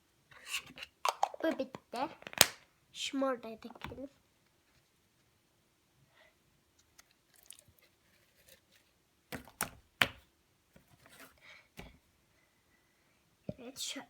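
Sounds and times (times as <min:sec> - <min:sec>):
sharp snaps or pops: 0:01.1 - 0:02.7.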